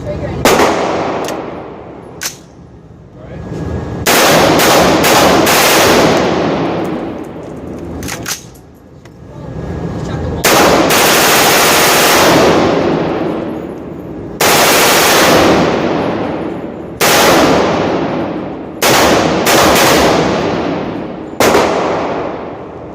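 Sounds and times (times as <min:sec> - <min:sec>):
rifle firing rapid bursts: 0:04.1 - 0:06.6, 0:10.4 - 0:12.8, 0:14.4 - 0:15.8, 0:18.8 - 0:20.6.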